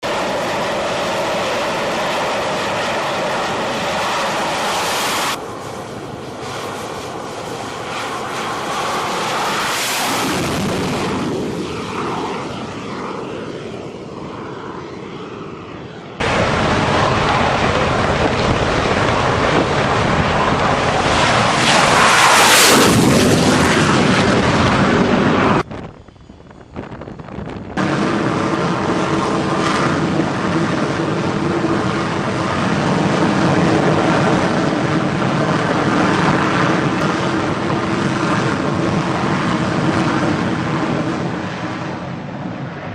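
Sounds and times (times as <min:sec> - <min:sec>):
jet aircraft roar: 0:00.0 - 0:42.9.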